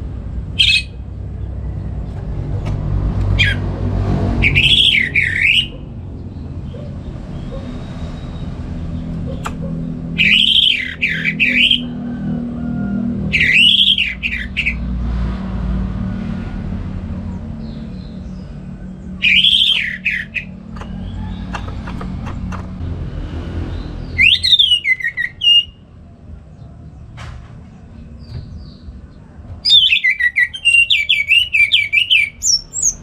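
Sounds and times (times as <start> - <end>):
thrush singing: 0.5 - 1.0, 3.2 - 6.0, 9.2 - 12.0, 13.2 - 14.8, 19.0 - 22.8, 23.5 - 25.8.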